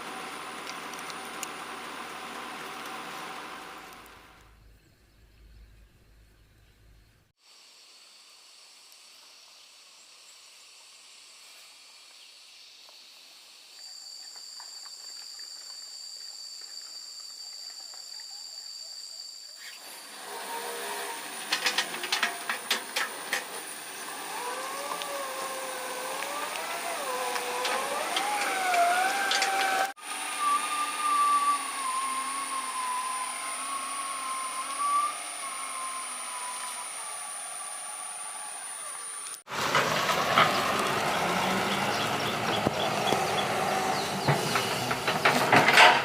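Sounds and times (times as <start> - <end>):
excavator engine: 0.0 - 4.5, 19.8 - 46.0
hydraulic whine: 19.8 - 46.0.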